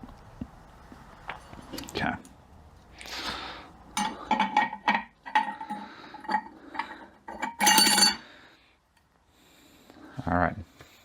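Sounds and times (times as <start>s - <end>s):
metallic rattle: 4.0s - 8.2s
steel parts clinking: 4.0s - 8.2s.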